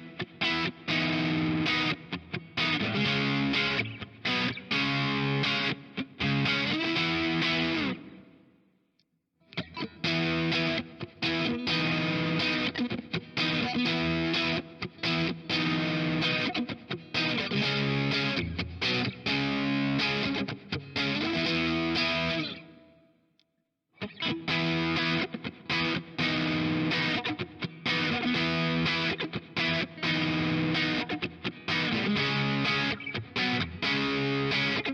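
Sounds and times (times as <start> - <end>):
distorted electric guitar riffs: 0.0 - 8.3, 9.5 - 22.9, 24.0 - 34.9.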